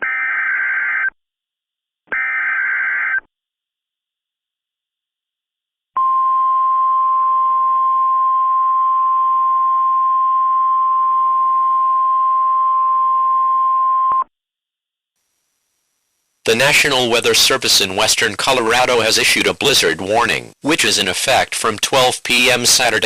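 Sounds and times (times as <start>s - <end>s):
faint static: 15.2s - 23.0s.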